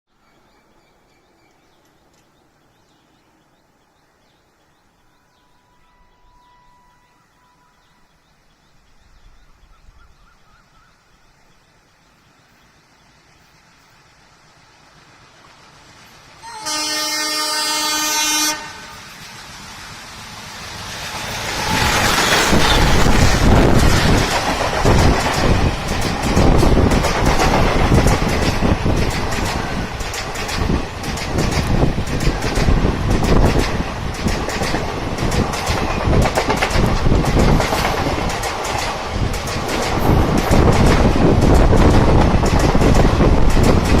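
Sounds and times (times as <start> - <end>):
small birds chirping: 0.2 - 14.0
locomotive horn blast: 5.5 - 8.0, 16.4 - 19.2, 21.4 - 22.9
train rumble: 11.2 - 44.0.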